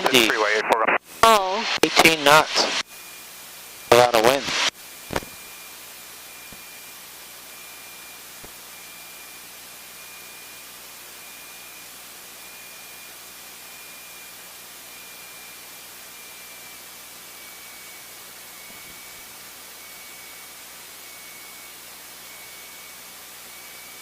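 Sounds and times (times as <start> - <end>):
intercom radio hiss: 0.0 - 2.8, 3.8 - 5.4
faint high whine: 0.0 - 24.0.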